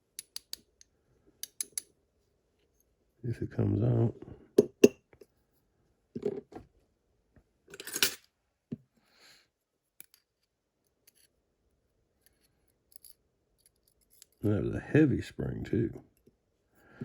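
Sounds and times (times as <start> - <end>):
small metal clicks: 0.1 - 1.9.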